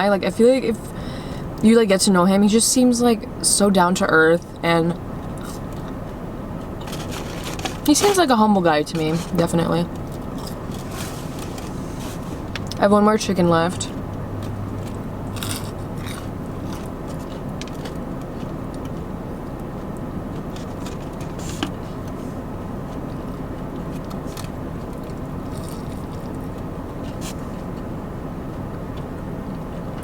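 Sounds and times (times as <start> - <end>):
steady low hum: 0.0 - 30.0
crunchy chewing: 5.3 - 8.2, 8.9 - 12.8, 14.4 - 22.2, 22.8 - 27.9.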